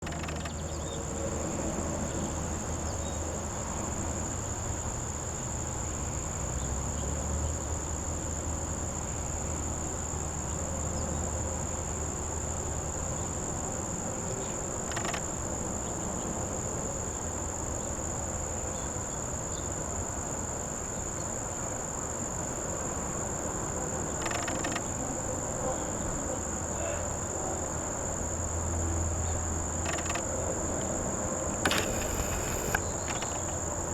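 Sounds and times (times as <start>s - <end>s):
insects trilling: 0.0s - 0.9s, 14.9s - 15.3s, 24.1s - 25.0s, 29.7s - 30.3s
low hiss: 31.7s - 32.8s.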